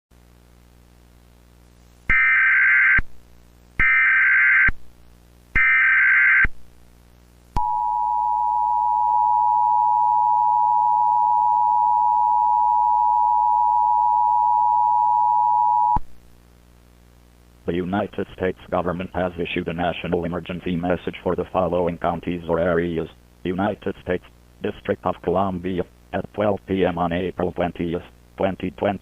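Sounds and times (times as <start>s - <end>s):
data tone bursts: 7.6s - 16.0s.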